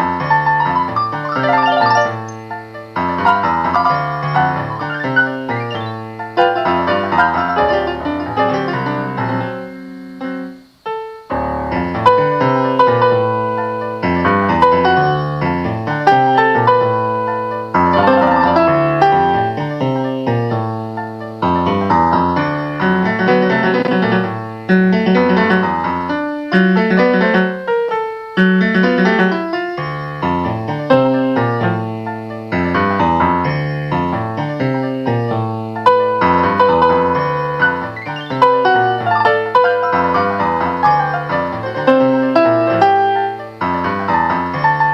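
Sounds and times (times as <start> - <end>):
solo piano playing: 0.0 - 44.9.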